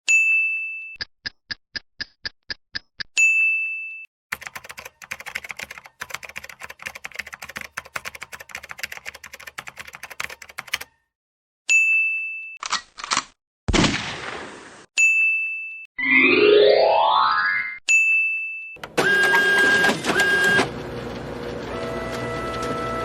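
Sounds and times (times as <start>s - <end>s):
typewriter keystrokes: 4.3s - 11.0s
typewriter carriage bell: 4.4s - 10.9s.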